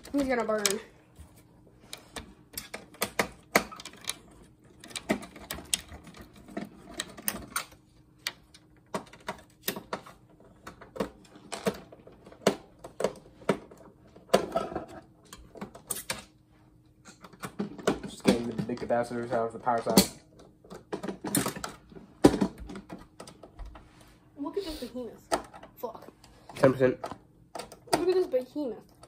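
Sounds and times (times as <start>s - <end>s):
hand tools clicking and tapping: 1.9s - 10.0s.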